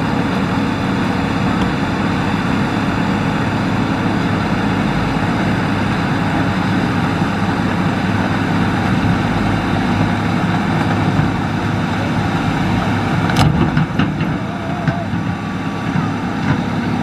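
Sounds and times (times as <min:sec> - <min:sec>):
excavator diesel engine running: 0:00.0 - 0:17.0.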